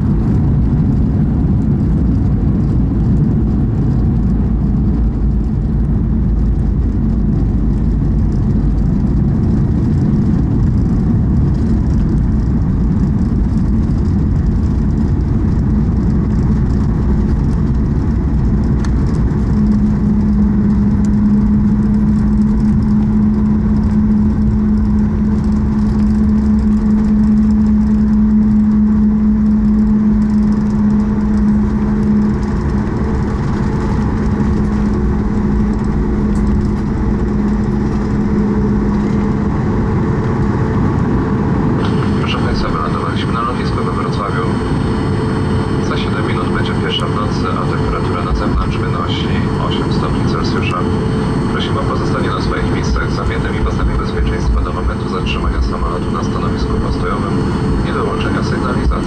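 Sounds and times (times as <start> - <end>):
airliner cabin rumble: 0.0 - 59.0
steady low hum: 0.0 - 59.0.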